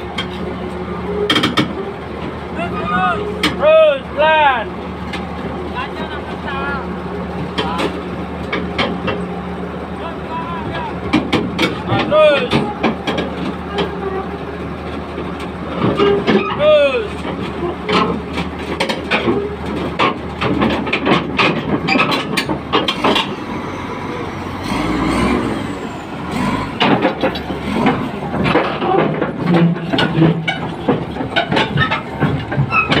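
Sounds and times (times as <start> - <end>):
bulldozer diesel engine running: 0.0 - 33.0
sharp metal clanks and knocks: 15.8 - 23.5, 26.3 - 33.0.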